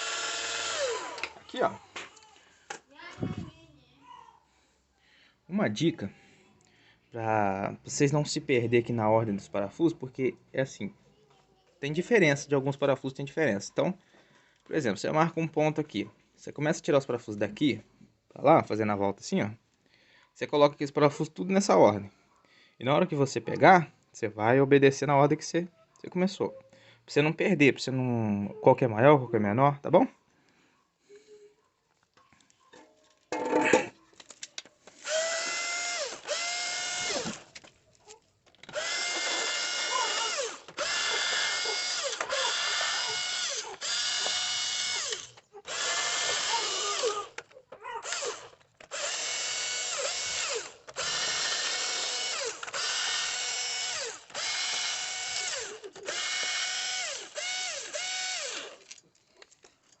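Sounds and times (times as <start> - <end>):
power screwdriver whine: 0.0 - 1.4, 35.0 - 37.4, 38.7 - 47.4, 48.0 - 58.9.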